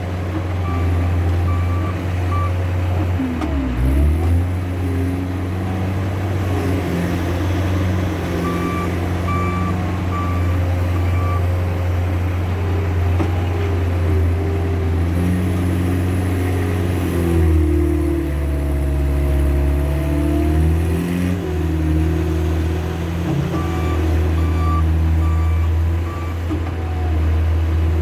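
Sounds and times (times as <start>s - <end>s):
diesel loader engine running: 0.0s - 28.0s
backup alarm beeping: 8.4s - 11.5s, 23.6s - 26.3s.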